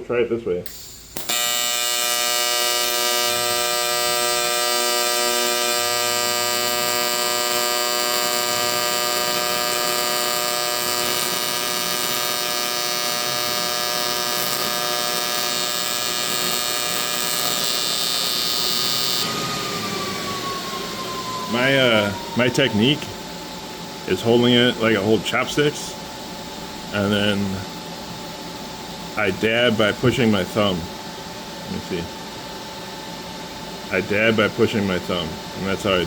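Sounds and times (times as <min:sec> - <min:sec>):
welding arc buzz: 0:00.6 - 0:27.8.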